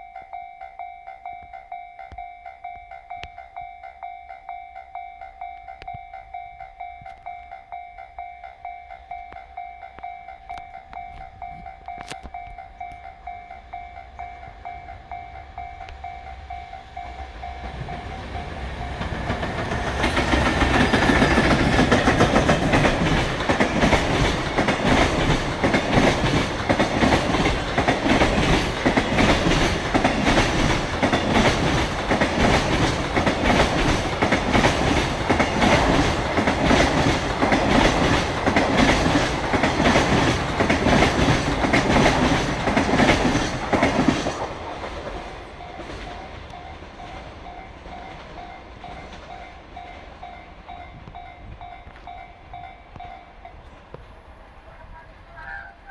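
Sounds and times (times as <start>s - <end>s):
level crossing warning bell: 0.0s - 53.9s
freight train rumbling past: 5.7s - 55.9s
wheels clattering over rail joints: 17.7s - 50.5s.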